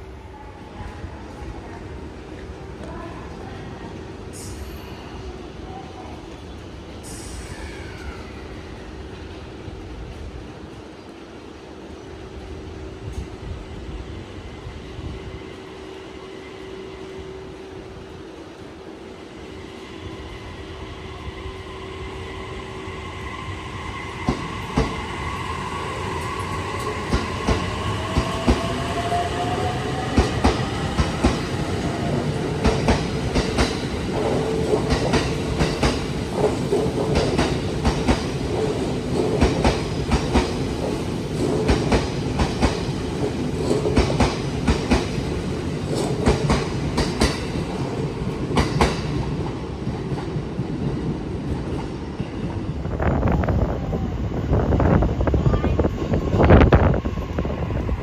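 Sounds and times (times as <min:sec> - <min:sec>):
train passing with rising whine: 0:06.4 - 0:58.0
train wheels clattering over rail joints: 0:32.6 - 0:50.3.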